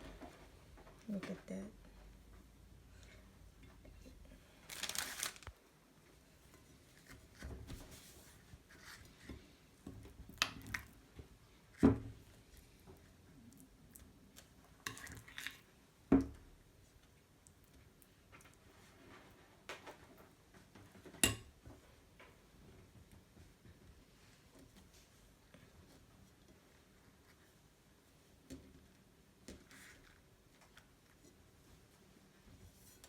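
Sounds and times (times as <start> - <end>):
wrappers rustling and crinkling: 4.5 - 5.6.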